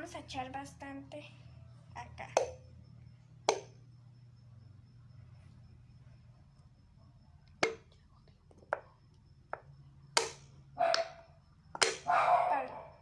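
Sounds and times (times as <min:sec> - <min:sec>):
plastic bottle knocking: 0:02.4 - 0:02.6, 0:03.5 - 0:03.7, 0:07.6 - 0:07.8, 0:08.5 - 0:08.9.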